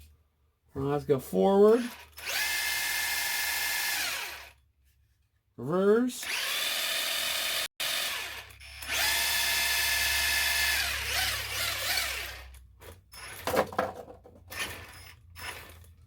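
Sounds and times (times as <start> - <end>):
toy truck electric motor whining: 1.7 - 4.6, 6.2 - 13.6, 14.5 - 16.0.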